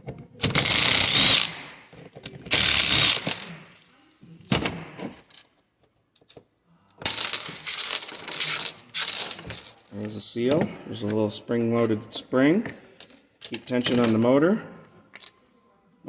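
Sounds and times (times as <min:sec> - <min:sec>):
power screwdriver whirring: 0:00.5 - 0:01.6, 0:02.5 - 0:03.4.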